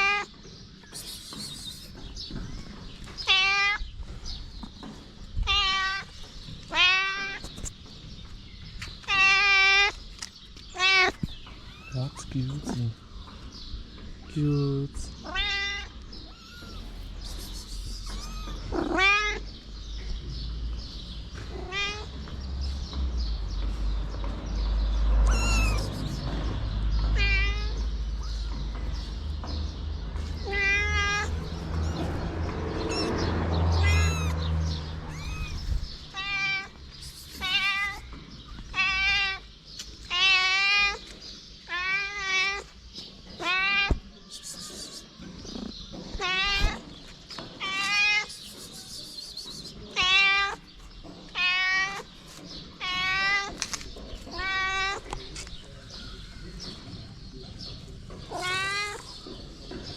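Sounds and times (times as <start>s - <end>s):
kittens mewing: 10.8s - 13.0s, 15.2s - 19.6s, 25.2s - 26.4s, 27.2s - 29.2s, 30.3s - 39.5s, 43.4s - 46.8s, 58.3s - 59.3s.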